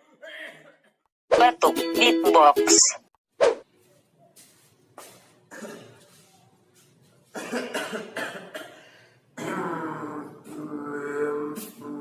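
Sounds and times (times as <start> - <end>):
rhythmic beatbox coughing: 5.5 - 6.2, 7.3 - 10.7.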